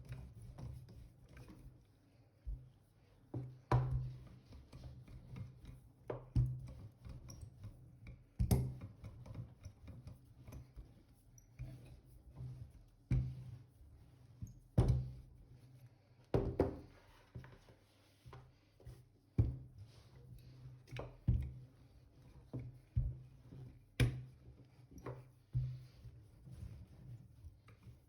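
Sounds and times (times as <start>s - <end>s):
thuds on a work surface: 16.4s - 16.8s.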